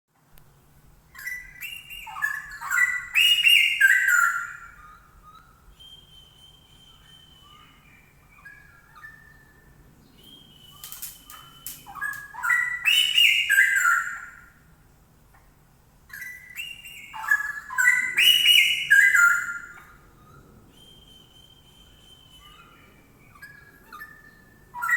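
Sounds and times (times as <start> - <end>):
bird singing warbling phrases: 1.1 - 14.6, 15.3 - 24.9
soft whistled bird notes: 1.1 - 14.6, 16.1 - 24.9
sharp bird clicks: 10.7 - 12.4.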